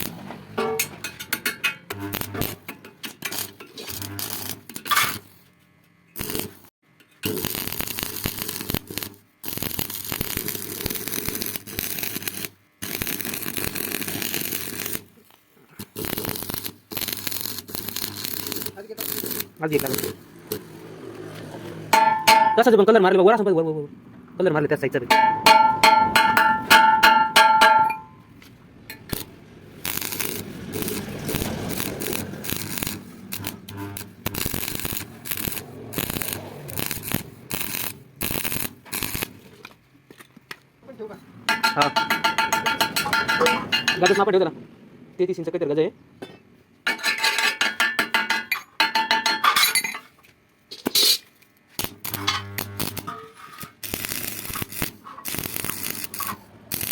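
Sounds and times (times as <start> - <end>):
welding arc crackling: 0.0 - 0.2, 1.9 - 5.4, 6.1 - 20.9, 28.9 - 39.7, 41.5 - 44.3, 50.7 - 56.9
hammer striking steel bar: 22.0 - 22.7, 25.1 - 28.3, 41.5 - 44.2
metal scraping on metal: 41.5 - 44.3, 46.9 - 50.0, 52.1 - 56.9.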